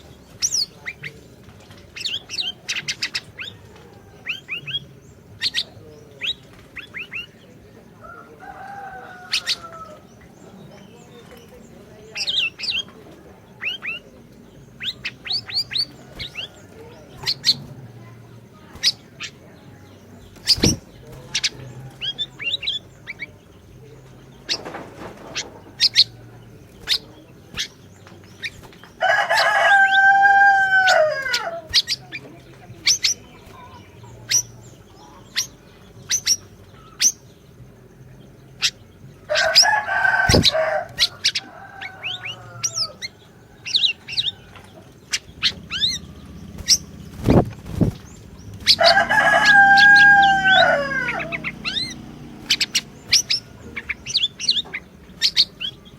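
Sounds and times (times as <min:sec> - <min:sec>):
bird chirping and trilling: 0:00.0 - 0:55.9
loud drawn-out bird call: 0:48.4 - 0:55.8.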